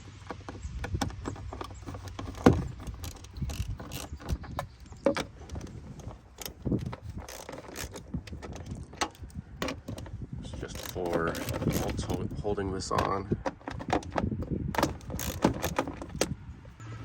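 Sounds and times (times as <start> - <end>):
ratchet wrench clicking: 2.0 - 4.4, 6.4 - 8.1, 14.8 - 16.3.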